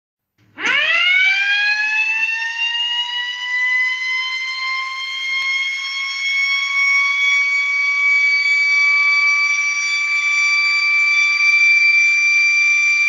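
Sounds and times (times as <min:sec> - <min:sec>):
electric motor siren wailing: 0:00.6 - 0:13.0.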